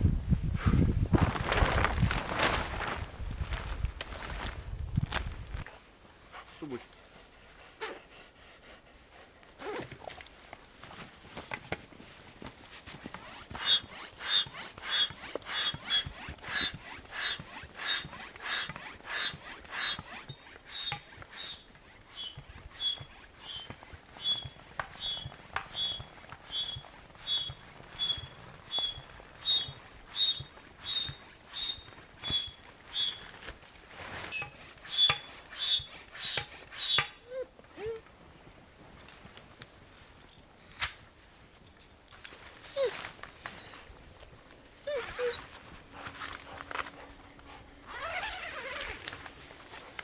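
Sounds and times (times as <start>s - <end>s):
footsteps crunching in snow: 0.6s - 5.9s.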